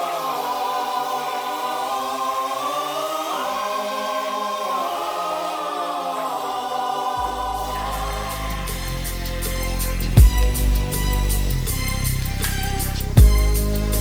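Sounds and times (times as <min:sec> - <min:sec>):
wordless choir-like chord: 0:00.0 - 0:14.0
deep bass: 0:07.2 - 0:14.0.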